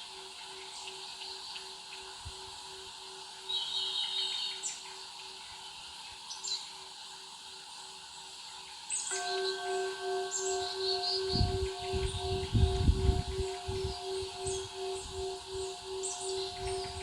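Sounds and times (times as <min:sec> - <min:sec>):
outdoor background hiss: 0:00.0 - 0:17.0
birds chirping: 0:09.0 - 0:17.0
faint pulsing hum: 0:09.1 - 0:17.0
pulsing tones: 0:09.1 - 0:17.0.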